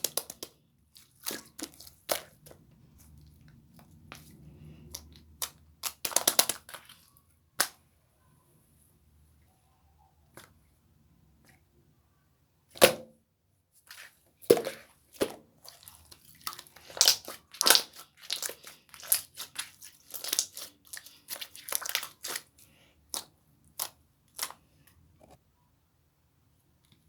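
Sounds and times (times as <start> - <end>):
slime clicking and popping: 4.9 - 6.8, 16.5 - 20.7.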